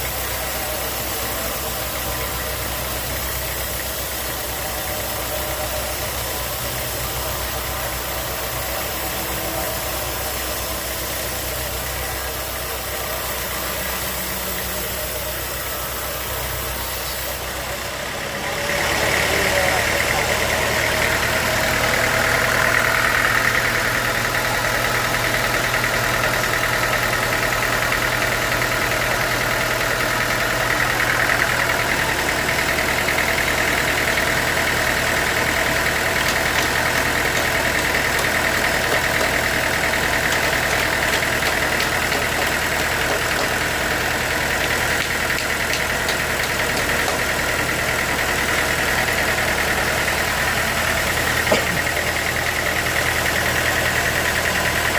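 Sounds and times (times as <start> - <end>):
engine hum: 0.0 - 54.9
saw high whine: 0.0 - 54.9.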